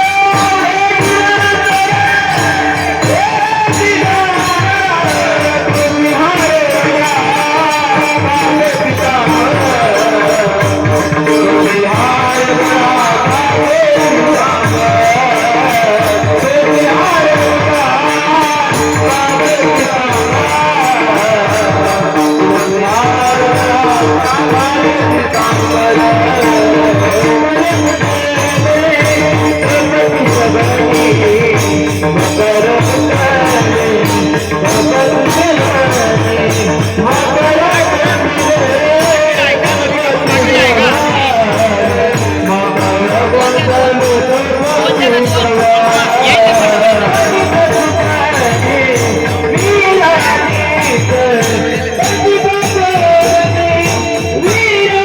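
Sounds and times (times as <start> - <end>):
drum strokes: 0.0 - 55.0
ornamented devotional melody: 0.0 - 55.0
small hand cymbals jingling: 0.0 - 55.0.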